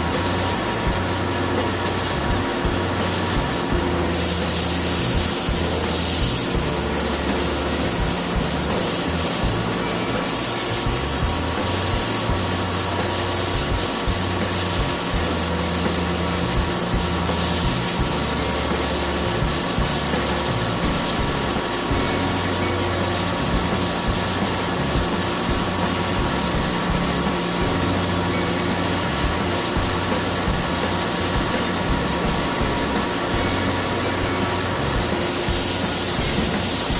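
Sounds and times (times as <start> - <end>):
machine high-pitched whine: 0.0 - 36.9
machine low hum stepping pitches: 0.0 - 36.9.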